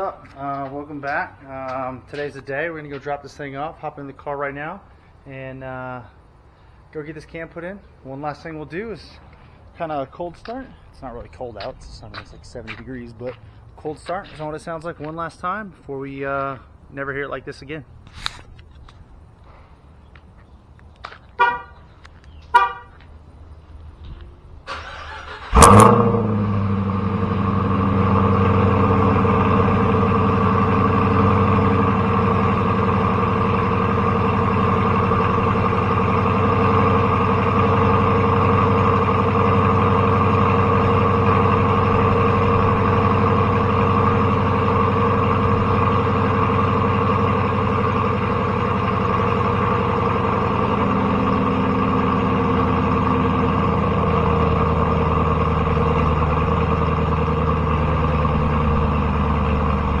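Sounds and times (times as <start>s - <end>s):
car engine idling: 24.8s - 60.0s.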